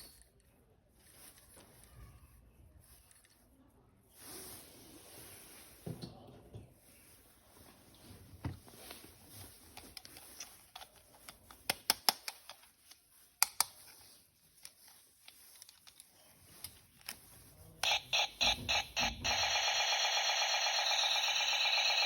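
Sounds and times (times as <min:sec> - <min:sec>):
plastic toy parts clicking: 0:09.8 - 0:17.2.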